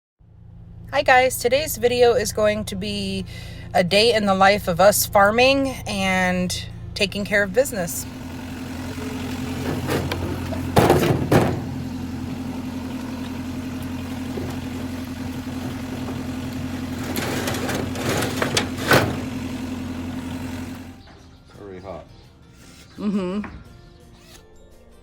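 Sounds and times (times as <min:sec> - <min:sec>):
engine idling: 0:00.2 - 0:21.2
knocks and rattles: 0:08.9 - 0:21.2.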